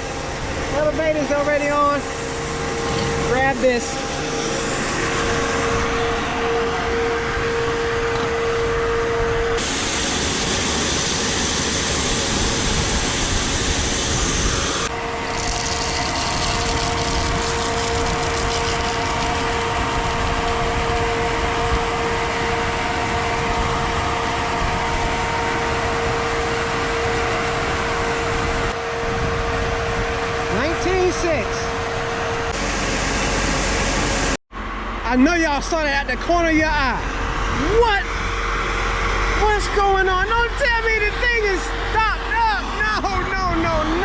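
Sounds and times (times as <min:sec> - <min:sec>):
grain auger machine drone: 0:00.0 - 0:35.2, 0:35.9 - 0:44.0
grain rushing hiss: 0:09.6 - 0:19.5.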